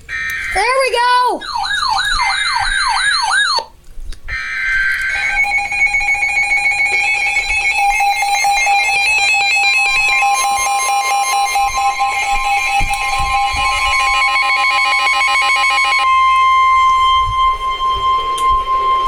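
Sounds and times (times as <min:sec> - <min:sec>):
steady high tone: 0:00.0 - 0:03.7, 0:04.3 - 0:19.0
fast-pulsing high beeps: 0:04.3 - 0:19.0
steady lower tone: 0:04.3 - 0:19.0
yelping electronic sweep: 0:13.9 - 0:19.0.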